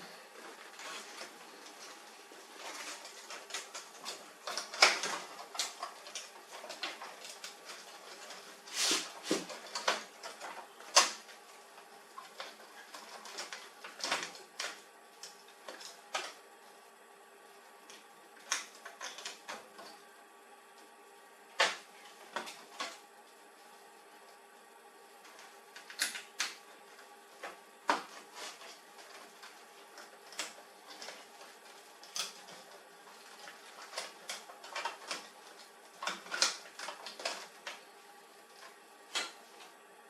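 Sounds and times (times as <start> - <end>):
faint steady hum: 0.0 - 40.0
printer parts clicking and knocking: 2.6 - 8.4.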